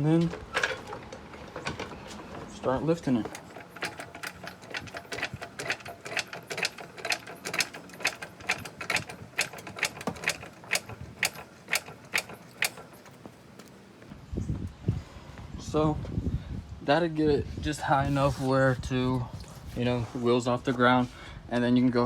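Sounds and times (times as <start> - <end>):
car jack clicking while pumped: 3.0 - 14.1.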